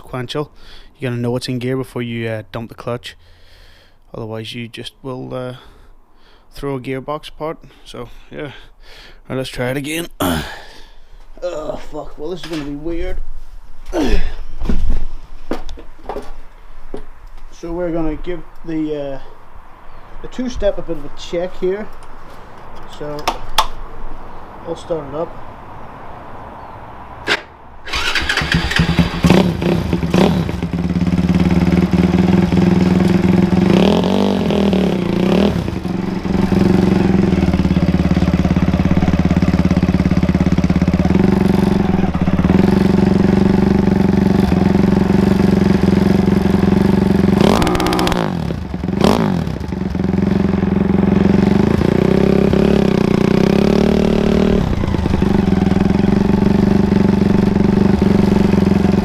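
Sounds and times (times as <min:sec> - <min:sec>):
lawn mower engine revving: 0:27.3 - 0:59.0.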